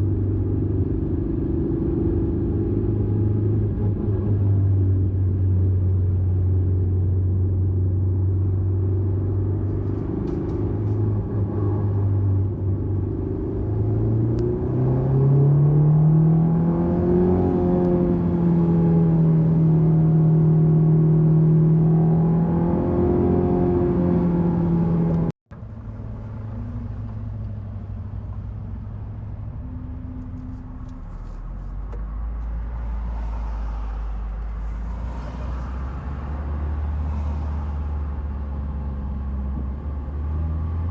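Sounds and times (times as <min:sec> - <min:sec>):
car engine running: 0:23.2 - 0:32.8.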